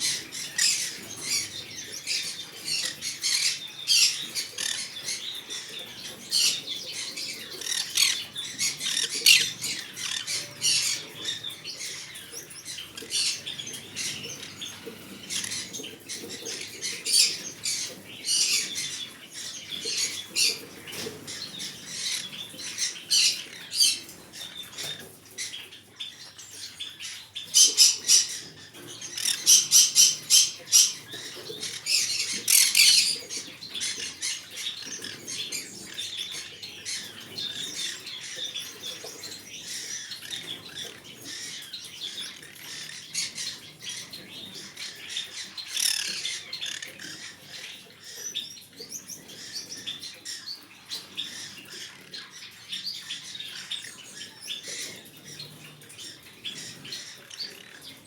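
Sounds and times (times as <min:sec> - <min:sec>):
parrot squawking and chirping: 0:00.0 - 0:15.8, 0:27.1 - 0:35.3.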